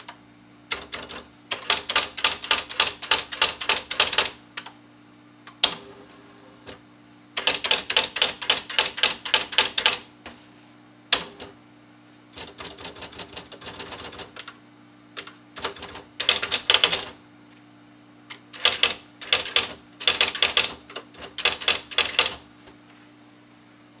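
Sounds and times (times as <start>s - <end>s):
electric typewriter hum: 0.0s - 4.8s, 5.4s - 6.8s, 7.4s - 10.1s, 11.1s - 11.6s, 12.3s - 17.2s, 18.3s - 22.5s
typewriter key strikes: 7.4s - 10.0s, 18.6s - 22.4s.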